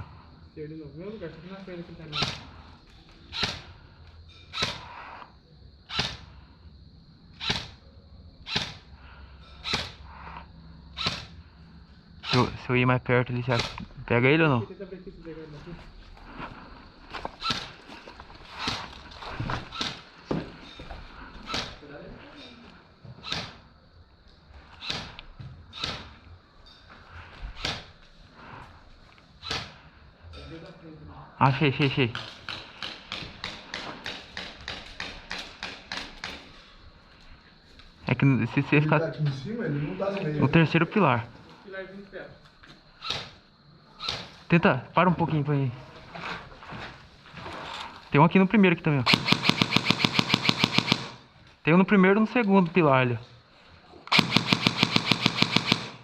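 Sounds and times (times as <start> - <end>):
airsoft gun single shots: 4.5 - 4.9, 5.9 - 6.2, 7.4 - 7.8, 8.5 - 8.8, 11.0 - 11.3, 49.1 - 51.3, 54.1 - 56.0.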